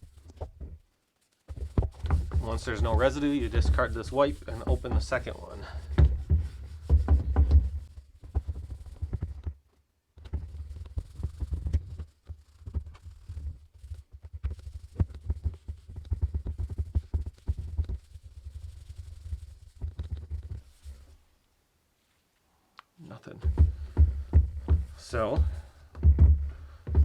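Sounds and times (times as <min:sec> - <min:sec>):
scrubbing plastic headlight lens: 0:01.5 - 0:06.1.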